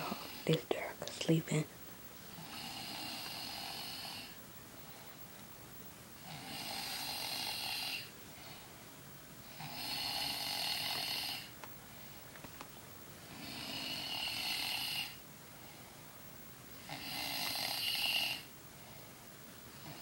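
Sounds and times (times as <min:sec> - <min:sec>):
person snoring: 0:00.0 - 0:00.5, 0:02.3 - 0:04.4, 0:06.2 - 0:08.1, 0:09.5 - 0:11.5, 0:13.3 - 0:15.2, 0:16.8 - 0:18.5
quiet breathing: 0:00.0 - 0:01.6, 0:02.2 - 0:05.6, 0:06.2 - 0:12.4, 0:13.2 - 0:20.0.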